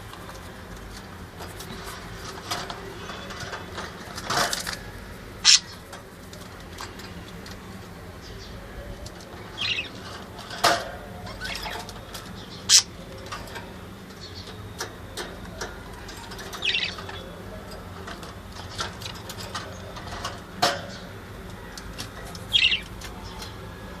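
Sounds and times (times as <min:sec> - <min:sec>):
small birds chirping: 0:00.1 - 0:24.0.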